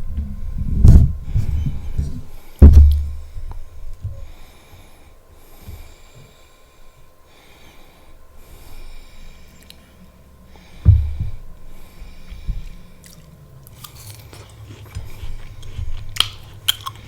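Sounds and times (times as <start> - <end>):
chewing and mouth noises: 12.0 - 17.0
crisp apple crunching bites: 12.6 - 17.0.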